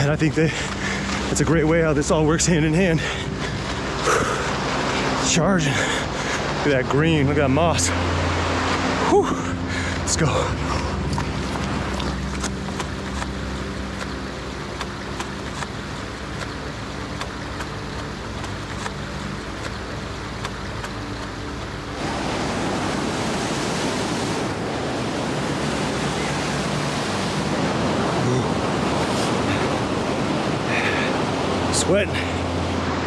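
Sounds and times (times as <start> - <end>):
waterfall rushing: 0.0 - 33.0
light ticks: 17.2 - 19.0.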